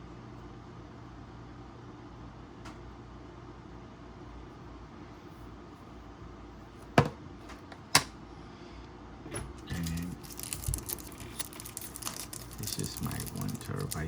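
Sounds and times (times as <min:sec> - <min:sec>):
steady low hum: 0:00.0 - 0:14.0
rustling and crinkling: 0:09.7 - 0:14.0
computer parts clicking: 0:09.8 - 0:14.0.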